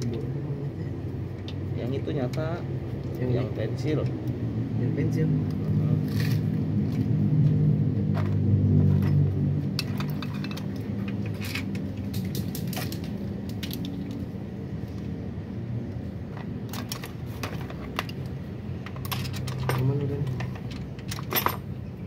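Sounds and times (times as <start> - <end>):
metal tools clinking: 9.8 - 13.0, 18.8 - 21.8.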